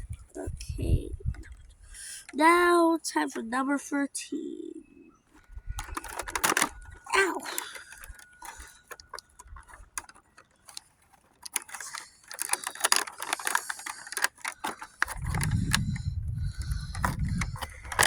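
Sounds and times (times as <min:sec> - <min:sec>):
clicks crinkles and rustles: 0:05.2 - 0:18.0
low handling rumble: 0:15.0 - 0:18.0.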